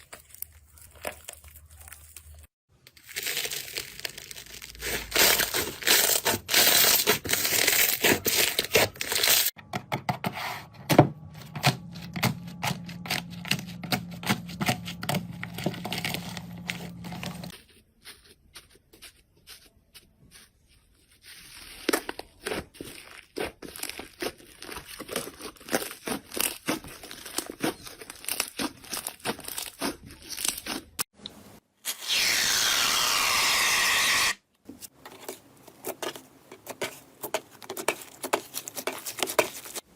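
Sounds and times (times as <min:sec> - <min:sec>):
slime crackling and popping: 0:21.8 - 0:31.0.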